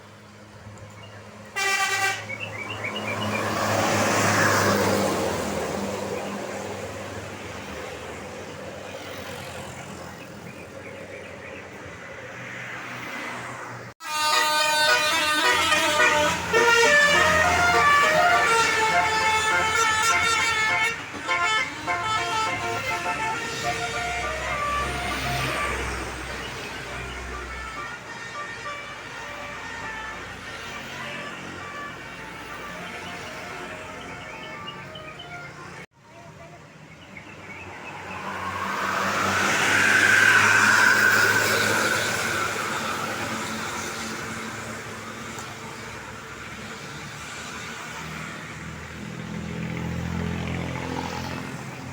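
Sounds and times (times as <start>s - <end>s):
bus horn playing a tune: 1.5s - 2.4s, 14.0s - 35.9s
low rumble of bus: 13.8s - 51.9s.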